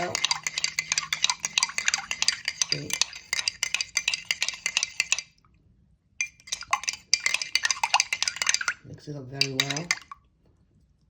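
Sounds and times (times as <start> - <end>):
spoon clinking in cup: 0.0 - 5.3, 6.2 - 8.8, 9.4 - 10.1.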